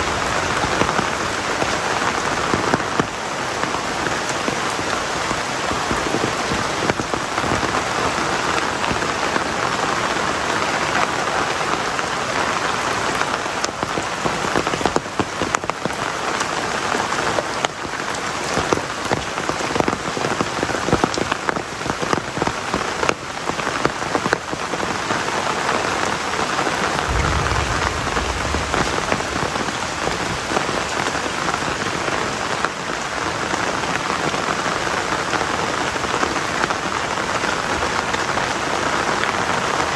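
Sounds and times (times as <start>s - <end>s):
low rumble: 27.0s - 31.6s
heavy rain pouring: 27.0s - 38.1s.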